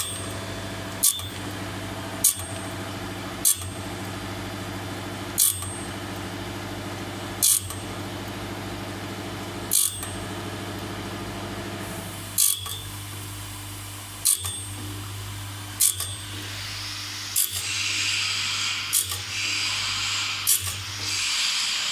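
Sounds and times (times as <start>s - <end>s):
hiss: 16.3s - 21.9s
motor hum: 16.3s - 21.9s.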